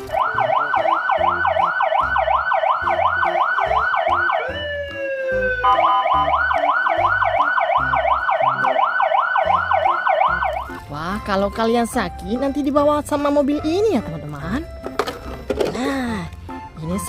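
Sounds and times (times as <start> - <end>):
ambulance siren wailing: 0.0 - 11.8.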